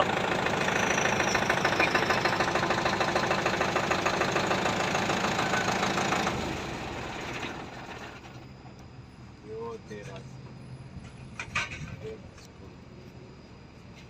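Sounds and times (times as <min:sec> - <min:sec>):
engine knocking: 0:00.0 - 0:08.4.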